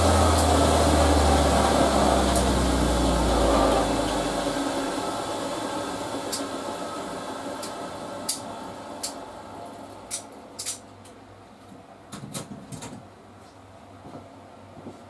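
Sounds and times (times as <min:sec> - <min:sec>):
steady low hum: 0:00.0 - 0:11.6.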